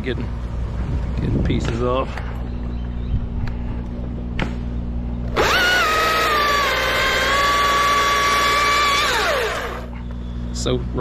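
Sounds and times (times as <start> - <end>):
chainsaw revving: 5.3 - 9.9.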